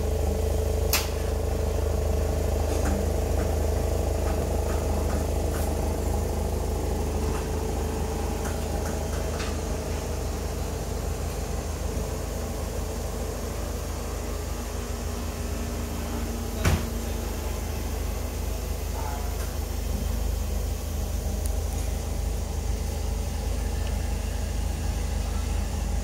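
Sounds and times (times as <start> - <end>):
car engine idling: 0.0 - 26.0
sharp click: 0.9 - 1.2.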